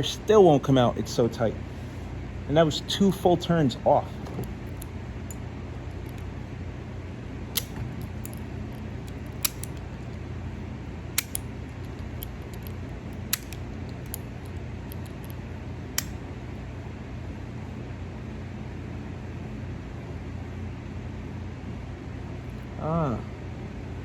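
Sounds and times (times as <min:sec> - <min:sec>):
steady low hum: 0:00.0 - 0:24.0
sharp metal clicks: 0:07.5 - 0:10.0, 0:11.2 - 0:15.4, 0:16.0 - 0:16.2.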